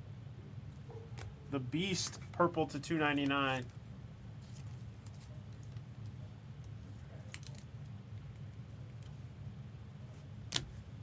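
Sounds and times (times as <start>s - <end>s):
steady low hum: 0.0s - 11.0s
trading cards clicking and rustling: 1.2s - 3.8s.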